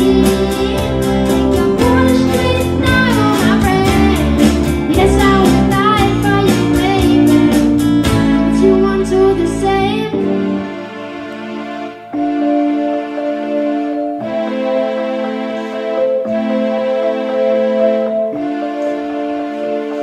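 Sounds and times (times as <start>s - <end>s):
children singing: 0.0s - 7.6s
band playing pop song: 0.0s - 10.6s.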